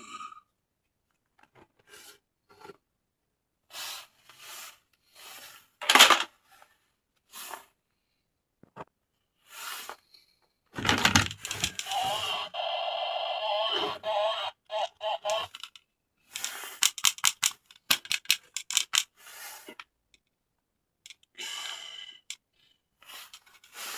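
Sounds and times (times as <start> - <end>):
toy packaging rubbing: 3.7 - 6.6, 10.8 - 19.8, 23.0 - 23.9
warbling electronic toy sound: 11.7 - 15.7.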